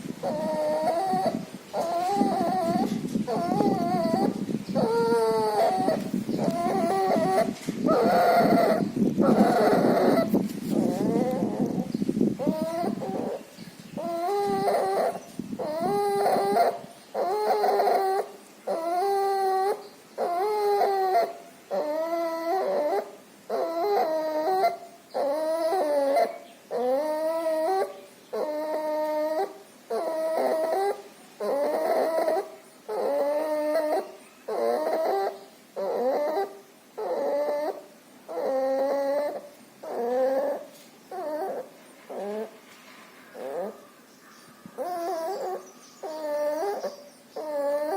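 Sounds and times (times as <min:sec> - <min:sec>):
puppy noisy breathing: 0:00.0 - 0:13.4
puppy whimpering: 0:00.0 - 0:42.6, 0:43.2 - 0:43.9, 0:44.8 - 0:47.9.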